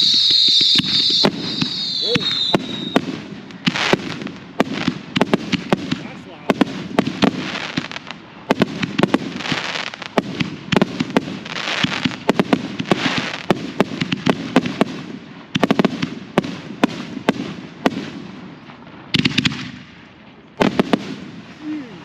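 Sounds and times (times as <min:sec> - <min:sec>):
firework shells bursting: 0:00.0 - 0:16.2.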